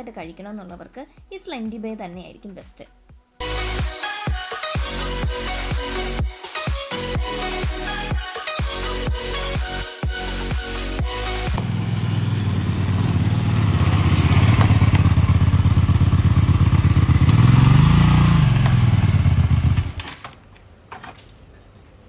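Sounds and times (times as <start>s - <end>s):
vehicle engine revving: 11.1s - 20.0s.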